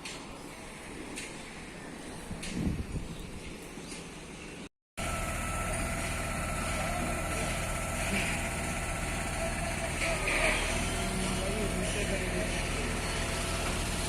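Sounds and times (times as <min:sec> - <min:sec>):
faint site ambience: 0:00.0 - 0:14.0
heavy truck engine running: 0:05.0 - 0:14.0.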